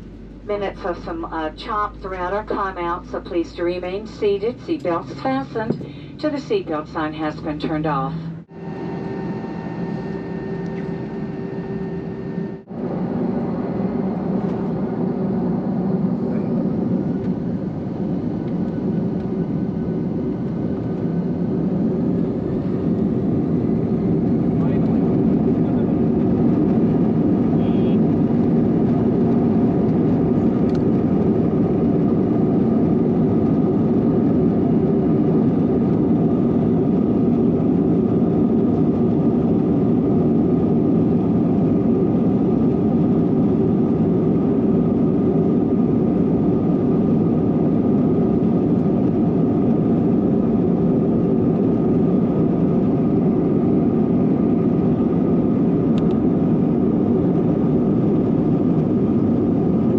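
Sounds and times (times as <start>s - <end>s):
faint held hum: 0.0s - 12.7s
jet engine cabin rumble: 0.0s - 59.9s.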